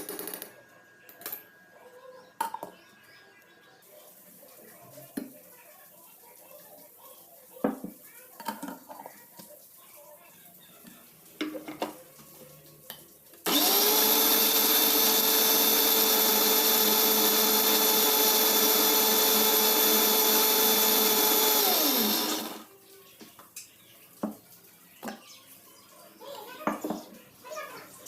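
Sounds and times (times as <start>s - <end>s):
mixer grinder motor whining: 13.5s - 22.7s.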